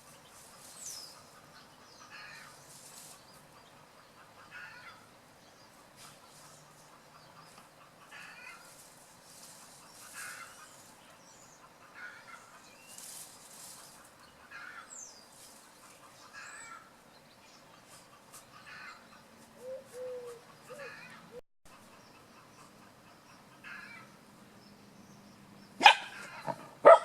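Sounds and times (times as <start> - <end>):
hen giving rough calls: 2.0 - 2.6, 4.2 - 5.1, 7.8 - 8.7, 10.0 - 10.7, 25.8 - 27.0.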